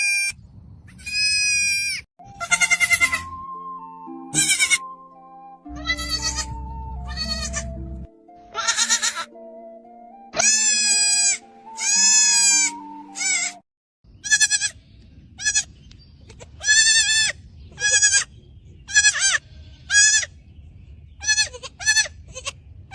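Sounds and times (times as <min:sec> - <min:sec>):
young goat bleating: 0:00.9 - 0:03.3, 0:04.4 - 0:04.9, 0:05.8 - 0:07.7, 0:08.5 - 0:09.3, 0:10.4 - 0:13.6, 0:14.2 - 0:14.8, 0:15.4 - 0:15.7, 0:16.3 - 0:18.3, 0:18.9 - 0:20.3, 0:21.2 - 0:22.6
background music: 0:02.2 - 0:13.6
outdoor background noise: 0:14.0 - 0:22.9.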